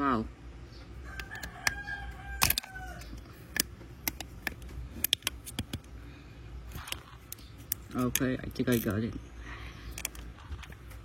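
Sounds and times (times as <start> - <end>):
rooster crowing: 1.0 - 3.3
plastic bricks clicking together: 6.8 - 9.1, 9.9 - 10.8.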